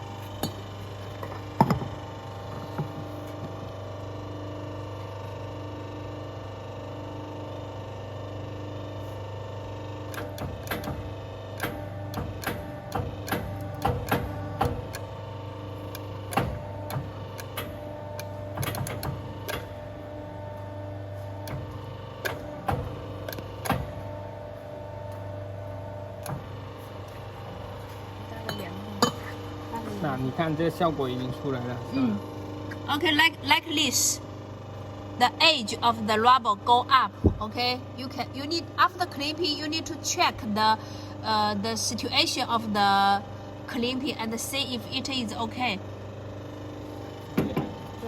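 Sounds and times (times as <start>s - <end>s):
crimping machine hum: 0.0s - 48.0s
sharp clicks and knocks: 10.1s - 15.1s, 15.9s - 19.8s, 21.4s - 24.2s, 26.2s - 26.6s.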